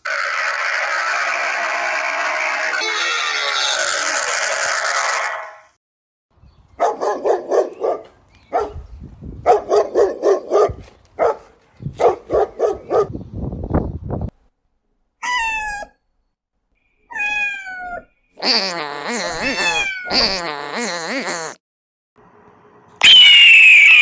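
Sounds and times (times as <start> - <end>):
dog barking: 6.8 - 8.8, 9.5 - 11.5
high falling calls: 18.4 - 21.6.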